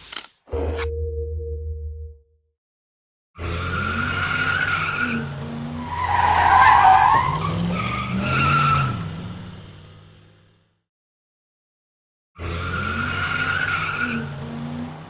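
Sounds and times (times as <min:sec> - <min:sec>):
car tyres screeching: 0:03.4 - 0:10.4, 0:12.4 - 0:15.0.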